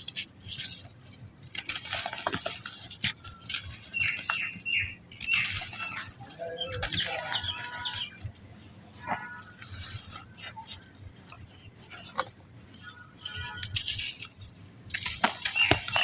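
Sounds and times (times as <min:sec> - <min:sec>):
sand balls crumbling and crunching: 0:00.0 - 0:16.0.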